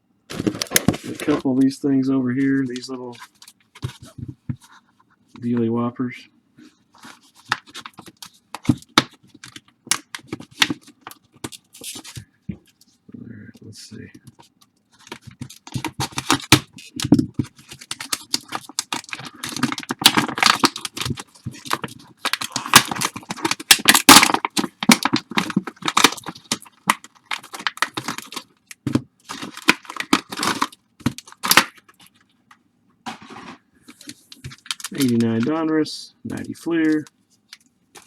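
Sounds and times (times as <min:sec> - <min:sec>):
wrappers torn and crinkled: 0:15.1 - 0:32.2, 0:33.3 - 0:35.5.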